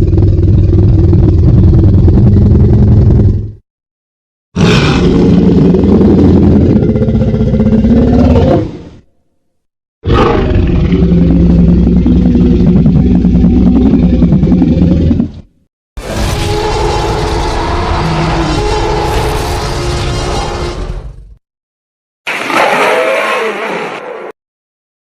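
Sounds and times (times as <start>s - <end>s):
deep creature roars: 4.6s - 9.0s, 10.0s - 21.0s.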